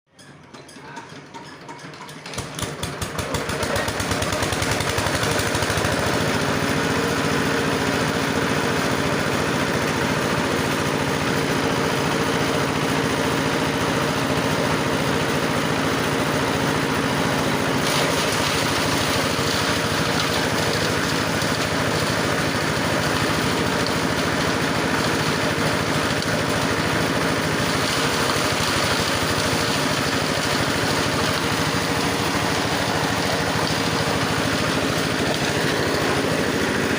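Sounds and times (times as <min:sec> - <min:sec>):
grass chopper machine running: 0:00.3 - 0:36.9.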